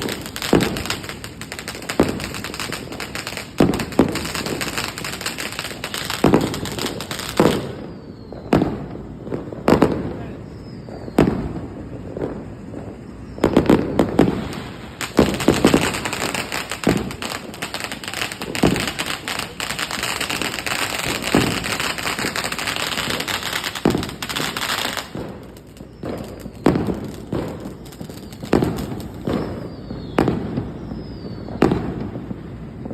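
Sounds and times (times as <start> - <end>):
firecracker bangs: 0.0 - 32.9
string of firecrackers crackling: 0.0 - 32.9
short falling whistles: 6.2 - 9.0, 10.3 - 11.6, 12.9 - 14.8, 15.5 - 31.8.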